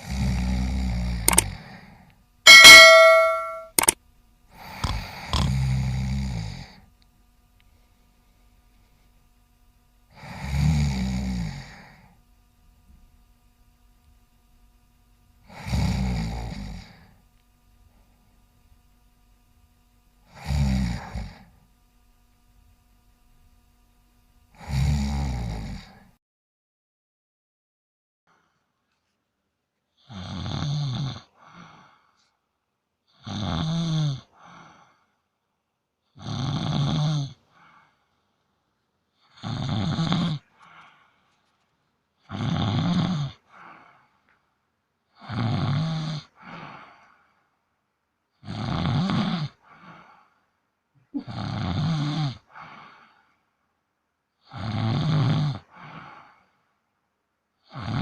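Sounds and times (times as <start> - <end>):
cat snoring: 0.0 - 1.8, 4.6 - 6.9, 10.1 - 12.2, 15.5 - 17.2, 20.3 - 21.5, 24.6 - 26.1, 30.0 - 31.8, 33.1 - 34.7, 36.1 - 37.4, 39.2 - 40.4, 42.3 - 43.9, 45.1 - 46.8, 48.4 - 50.2, 51.2 - 53.1, 54.4 - 56.4, 57.6 - 58.0.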